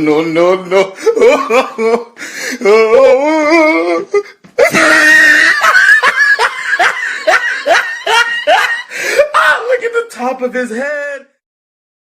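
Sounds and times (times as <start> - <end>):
man laughing hysterically: 0.7 - 9.7.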